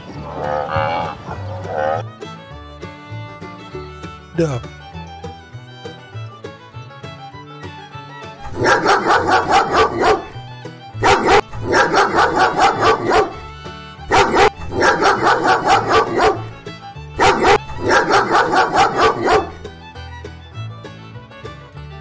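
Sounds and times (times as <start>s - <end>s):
fiddle music: 0.0s - 22.0s
dog barking: 8.5s - 10.4s, 11.0s - 13.4s, 14.1s - 16.6s, 17.2s - 19.7s.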